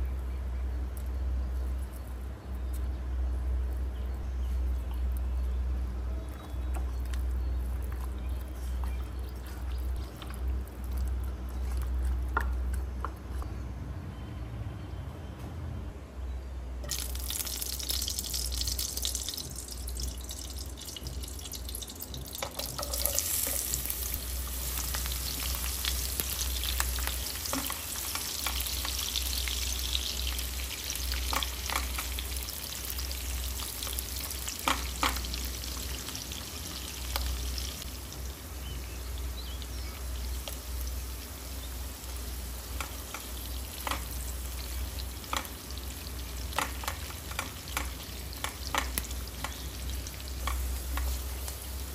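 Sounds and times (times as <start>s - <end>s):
food frying in hot oil: 16.8s - 51.9s
utensil clicking against pan: 46.5s - 49.6s.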